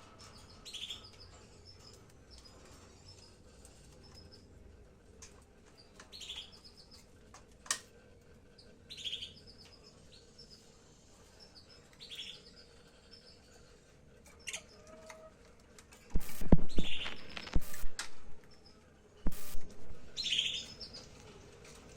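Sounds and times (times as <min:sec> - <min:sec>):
lovebirds chirping: 0:00.1 - 0:04.5, 0:08.6 - 0:15.3, 0:16.2 - 0:21.2.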